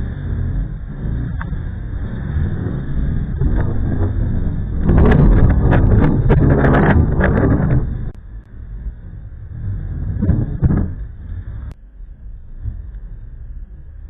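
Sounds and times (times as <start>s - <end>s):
wind buffeting microphone: 0.7s - 11.8s.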